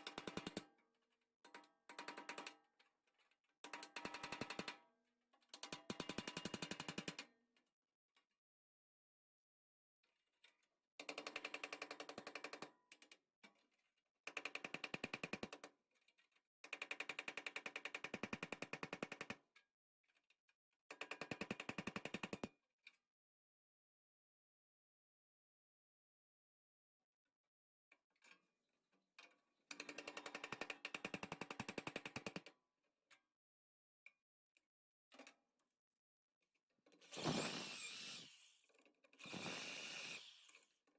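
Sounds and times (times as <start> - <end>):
power tool cutting sheet metal: 37.0 - 40.7.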